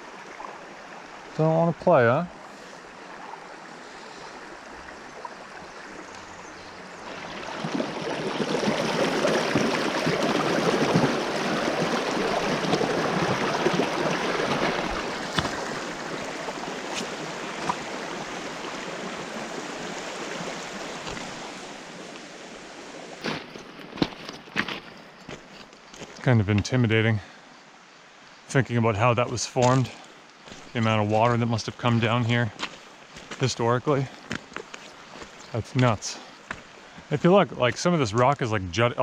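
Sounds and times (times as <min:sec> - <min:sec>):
creek water rushing over rocks: 0:00.0 - 0:39.0.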